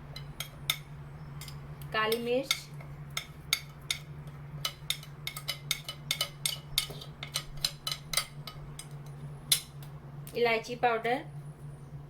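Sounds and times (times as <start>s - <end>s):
spoon clinking against pot: 0.2s - 9.7s.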